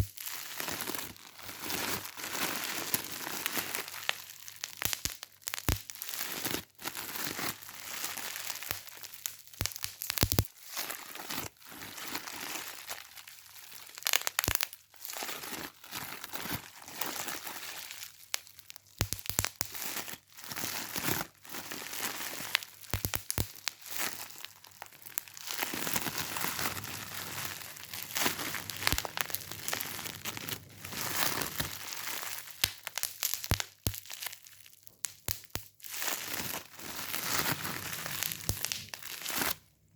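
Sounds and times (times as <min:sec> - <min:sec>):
crumpled material crinkling: 0:00.0 - 0:39.7.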